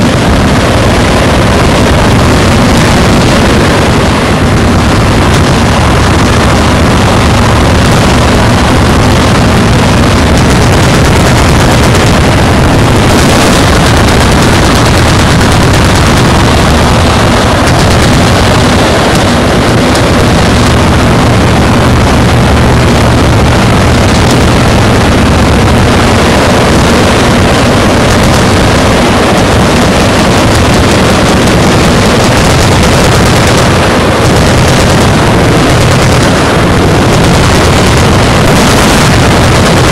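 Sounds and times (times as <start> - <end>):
automatic machine gun fire: 4.8 - 21.1.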